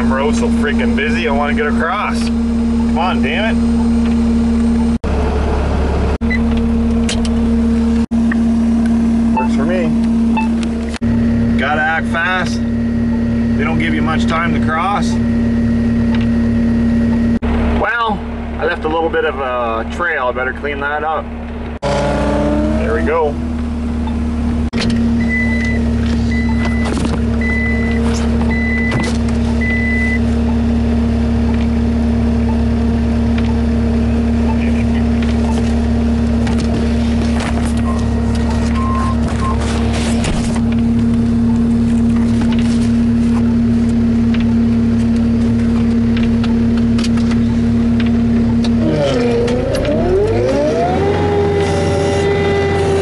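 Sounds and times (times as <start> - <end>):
diesel engine running: 0.0 - 53.0
backup alarm beeping: 9.3 - 11.3, 25.2 - 30.7, 32.4 - 32.7, 37.8 - 39.7.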